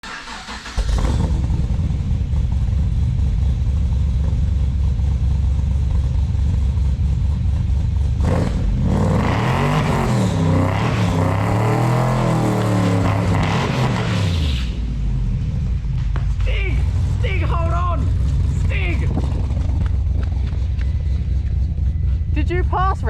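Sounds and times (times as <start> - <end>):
car engine rumbling and revving: 0.0 - 23.0.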